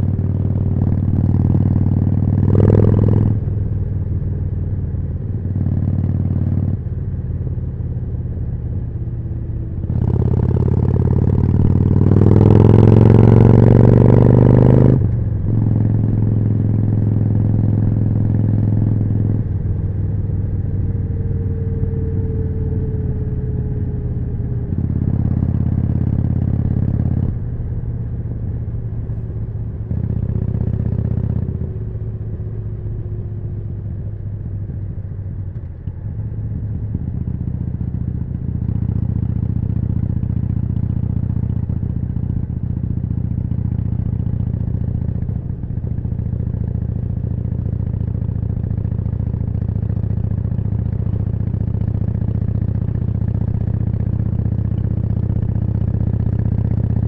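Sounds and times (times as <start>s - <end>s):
motorcycle engine revving: 0.0s - 3.6s, 9.8s - 27.6s, 29.6s - 34.7s.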